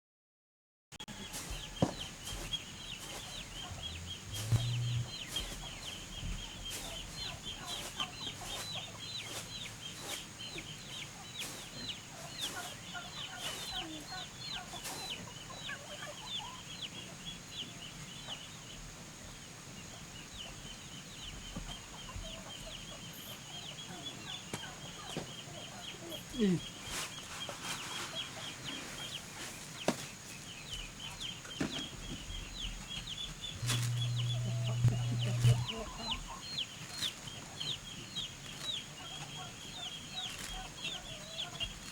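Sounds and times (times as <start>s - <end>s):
chickens peeping and clucking: 1.0s - 41.9s.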